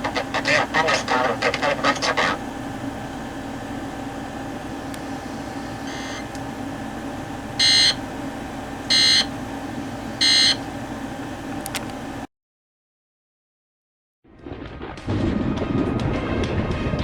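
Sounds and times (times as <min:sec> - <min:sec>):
steady low hum: 0:00.0 - 0:12.3
digital data tone bursts: 0:05.8 - 0:06.3, 0:07.6 - 0:08.0, 0:08.9 - 0:09.3, 0:10.2 - 0:10.6.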